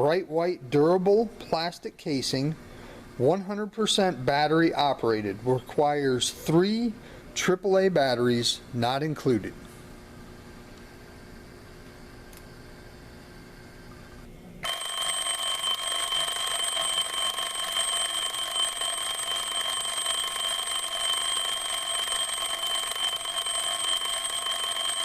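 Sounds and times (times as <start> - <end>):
alarm clock bell ringing: 14.6 - 25.0.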